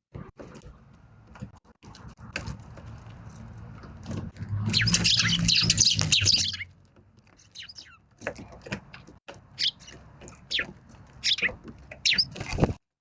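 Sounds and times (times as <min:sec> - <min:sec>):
sparrows chirping: 0:04.5 - 0:12.6.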